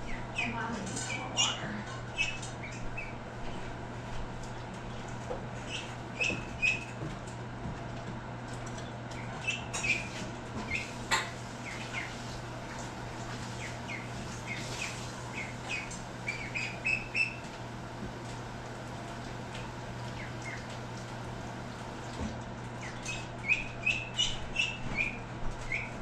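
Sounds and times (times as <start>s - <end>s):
birds chirping and squawking: 0.0s - 3.6s, 5.6s - 7.0s, 8.8s - 17.5s, 20.0s - 20.8s, 22.8s - 26.0s
steady low hum: 0.0s - 26.0s.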